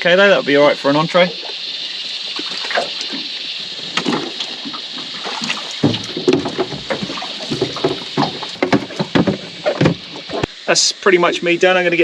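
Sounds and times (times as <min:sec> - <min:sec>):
steady high hiss: 0:00.0 - 0:12.0
water sloshing against hull: 0:01.2 - 0:10.6
gear knocking and clattering aboard: 0:05.8 - 0:10.5.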